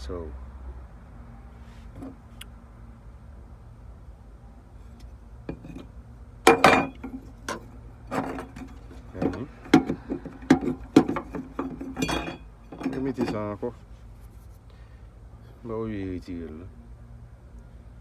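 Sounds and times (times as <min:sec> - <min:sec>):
low steady hum: 0:01.2 - 0:15.6
hand tools knocking and clinking: 0:02.0 - 0:02.2, 0:05.5 - 0:05.9, 0:06.5 - 0:13.5.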